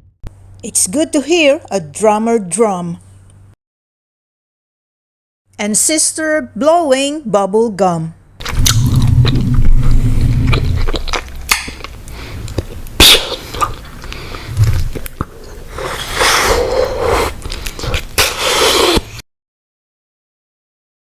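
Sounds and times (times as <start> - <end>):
wet gum chewing and smacking: 8.4 - 18.4
sharp gum snap: 11.0 - 11.8.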